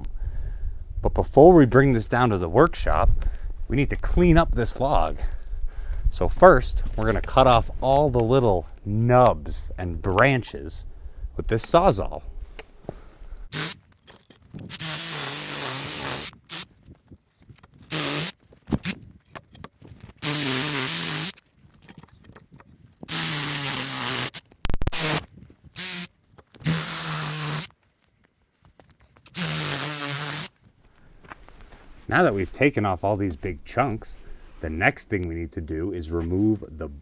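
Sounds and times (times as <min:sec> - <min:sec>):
reciprocating saw cutting wood: 0:13.5 - 0:13.8, 0:14.7 - 0:16.7, 0:17.9 - 0:19.0, 0:20.2 - 0:21.4, 0:23.1 - 0:27.7, 0:29.3 - 0:30.5.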